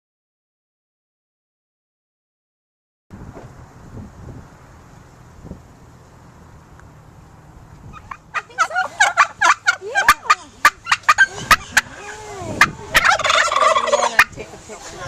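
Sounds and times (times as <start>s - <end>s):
turkeys gobbling: 7.9s - 14.4s.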